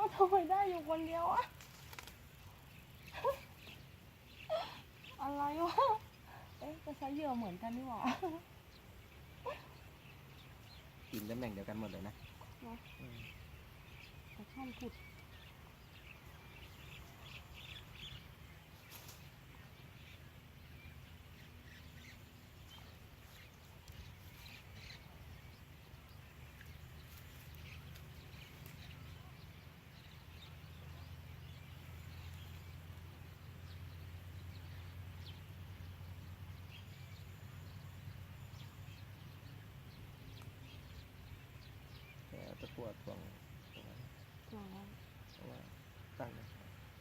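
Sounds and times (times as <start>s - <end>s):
faint bird chirps: 36.6s - 47.0s.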